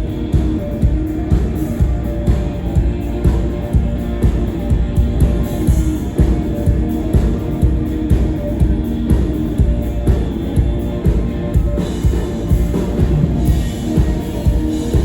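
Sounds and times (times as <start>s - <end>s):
drum kit: 0.0s - 15.0s
electric guitar: 0.0s - 15.0s
kick drum steady beat: 0.0s - 15.0s.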